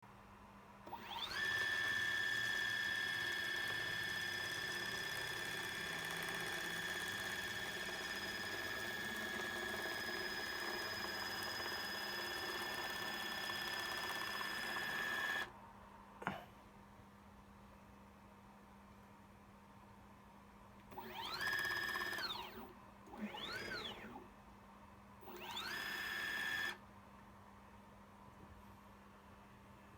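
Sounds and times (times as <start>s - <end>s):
electric motor whine: 0.9s - 15.5s, 21.0s - 24.2s, 25.3s - 26.8s.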